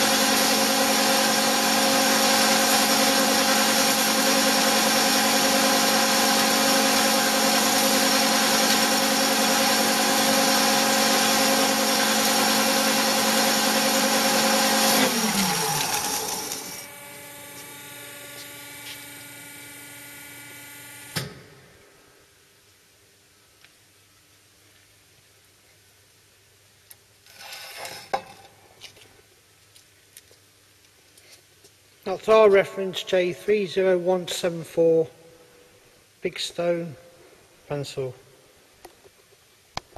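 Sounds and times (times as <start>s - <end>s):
bandsaw running and spinning down: 0.0s - 21.2s.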